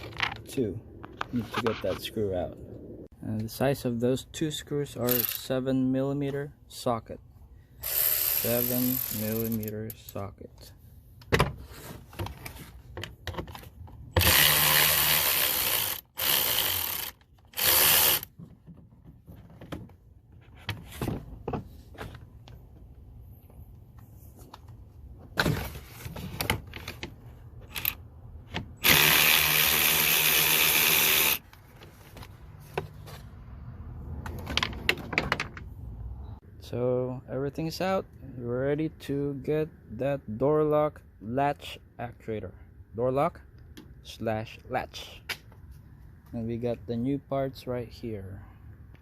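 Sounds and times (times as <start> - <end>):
cordless drill running: 7.8 - 9.5, 14.2 - 18.3, 28.8 - 31.4.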